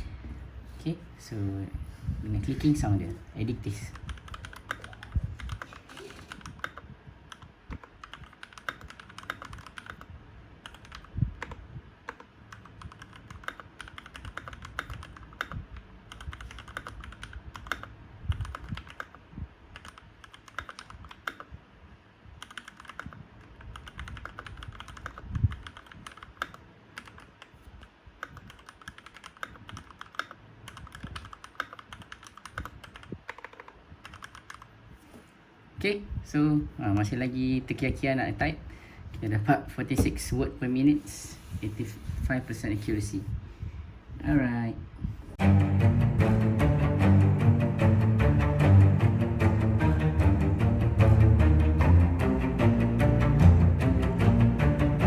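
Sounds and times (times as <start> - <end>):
mechanical keyboard typing: 3.8 - 21.5, 22.4 - 34.8.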